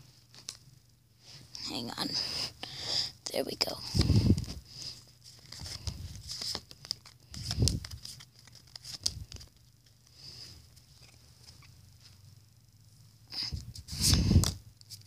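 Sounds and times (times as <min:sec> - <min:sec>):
foil wrapper crinkling: 0:05.3 - 0:10.1
cards flicking and tapping: 0:05.4 - 0:10.1, 0:13.7 - 0:15.0.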